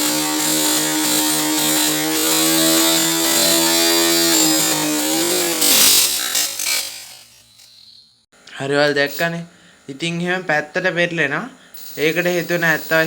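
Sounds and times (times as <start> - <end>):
electric motors buzzing whine: 0.0 - 8.2.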